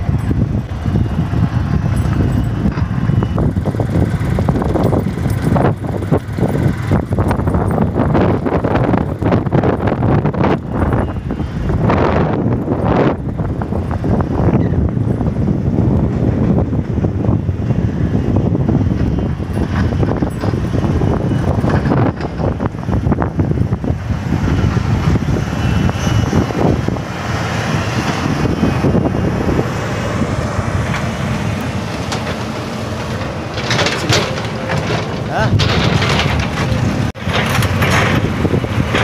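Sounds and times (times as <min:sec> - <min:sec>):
vehicle rumbling over rough road: 0:00.0 - 0:39.0
knocks and rattles: 0:01.8 - 0:11.2, 0:18.8 - 0:23.2, 0:30.8 - 0:39.0.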